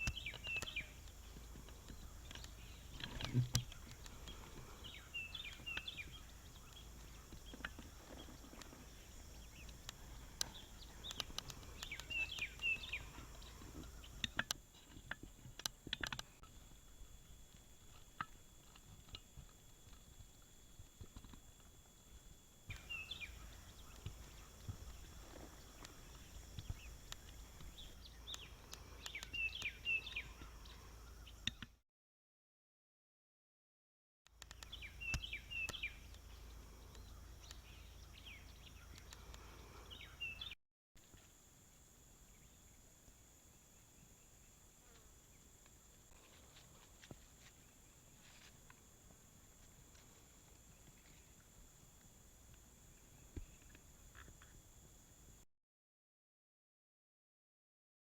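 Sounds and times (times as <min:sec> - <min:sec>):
songbird chirping: 0:00.0 - 0:31.8, 0:34.3 - 0:41.3, 0:42.1 - 0:54.6
sharp clicks: 0:09.6 - 0:13.5, 0:34.3 - 0:36.2.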